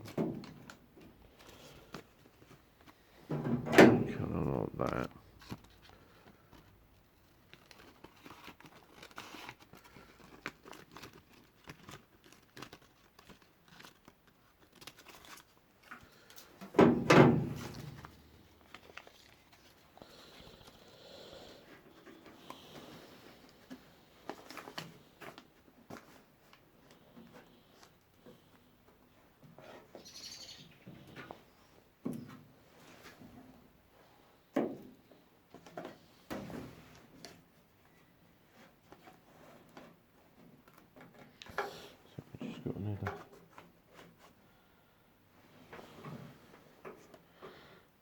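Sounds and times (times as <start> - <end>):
packing paper rustling and crinkling: 4.2 - 20.8, 22.8 - 28.6.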